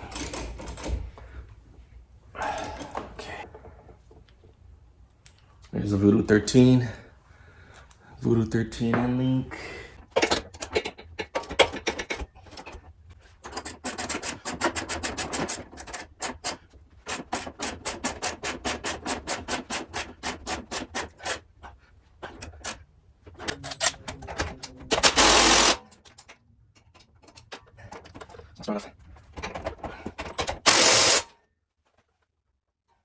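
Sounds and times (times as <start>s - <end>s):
ratchet wrench clicking: 25.0s - 25.9s, 30.6s - 31.3s.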